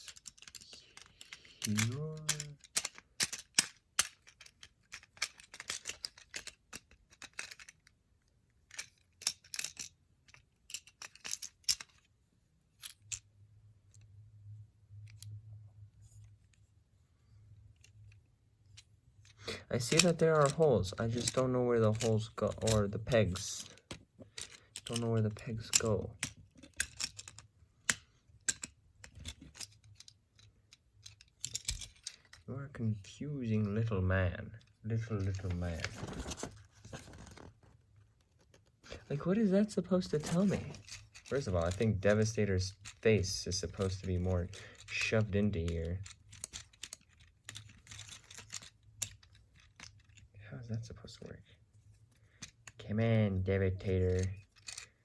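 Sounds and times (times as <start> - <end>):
plastic parts clicking and snapping: 0.0 - 12.1, 17.7 - 32.5, 34.5 - 50.3, 53.7 - 55.0.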